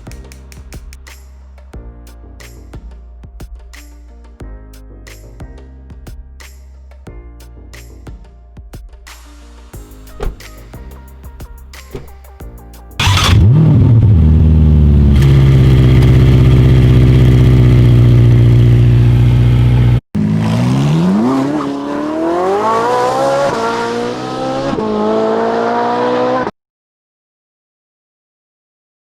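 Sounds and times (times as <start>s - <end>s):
car engine idling: 13.0s - 20.0s
car engine accelerating with gear shifts: 13.0s - 26.5s.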